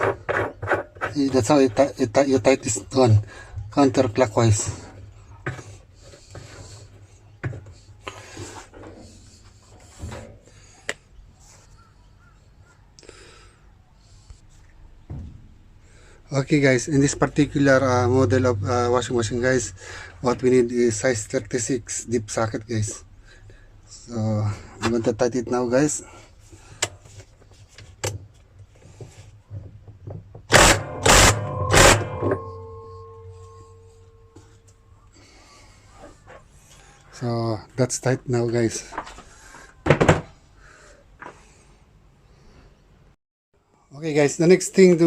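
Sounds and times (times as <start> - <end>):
power wrench bursts: 30.5 - 32.4
metal drum ringing: 30.5 - 34.6.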